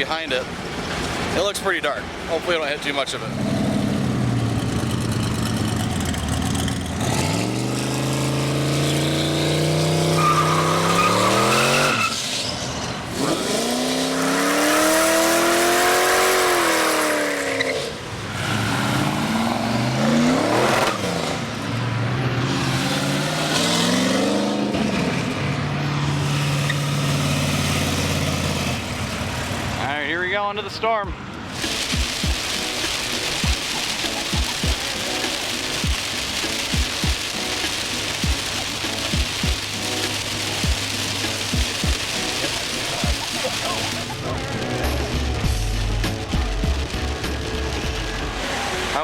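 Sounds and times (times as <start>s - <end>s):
car engine accelerating: 3.1s - 29.8s, 31.4s - 49.0s.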